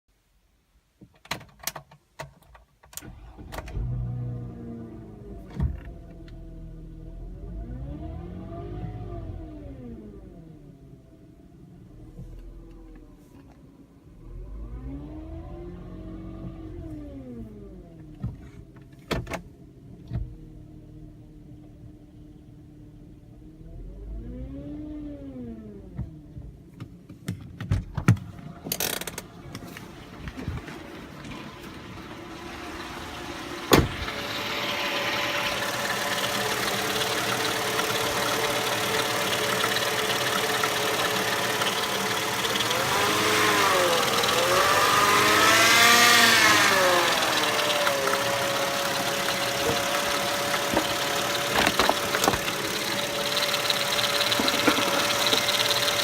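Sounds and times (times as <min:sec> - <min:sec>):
car engine running: 0:29.2 - 0:56.0.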